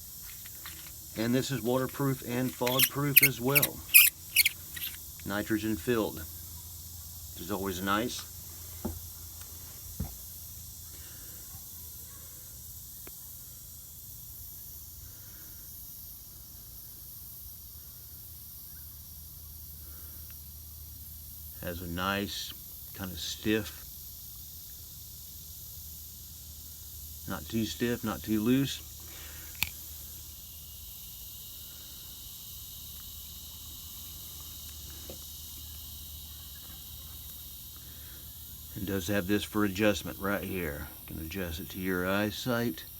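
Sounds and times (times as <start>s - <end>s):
background hiss: 0.0s - 42.9s
faint tap: 10.0s - 10.2s
rifle scope click: 29.6s - 29.8s.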